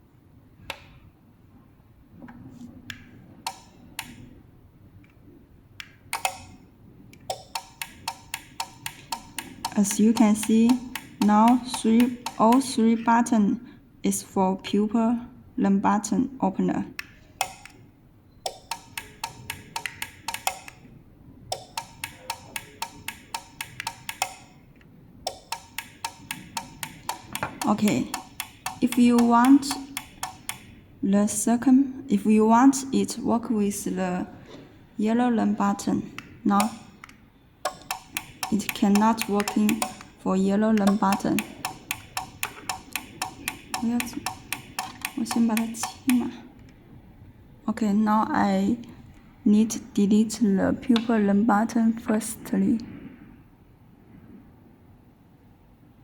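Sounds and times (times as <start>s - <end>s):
remote button clicks: 5.8s - 6.6s, 7.2s - 12.7s, 17.0s - 17.8s, 18.5s - 20.8s, 21.5s - 24.6s, 25.3s - 30.7s, 36.5s - 40.2s, 40.8s - 46.3s
garage door opener clicking: 7.3s - 12.8s, 18.5s - 20.8s, 21.5s - 24.6s, 25.3s - 30.7s, 37.7s - 40.2s, 40.8s - 46.3s.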